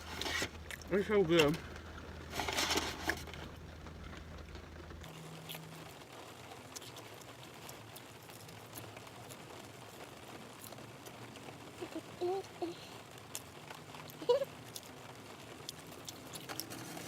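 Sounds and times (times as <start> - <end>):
chewing and mouth smacking: 5.0 - 5.8, 6.7 - 10.0, 13.2 - 15.0, 15.6 - 16.9.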